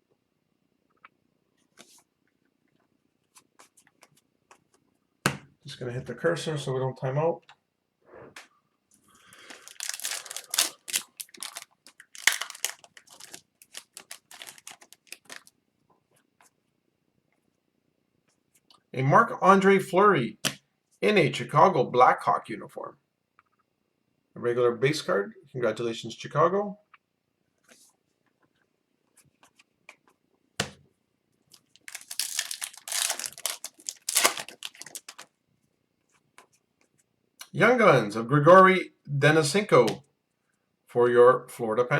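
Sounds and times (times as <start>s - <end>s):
foil pack crinkling: 9.3s - 15.5s, 31.5s - 35.3s.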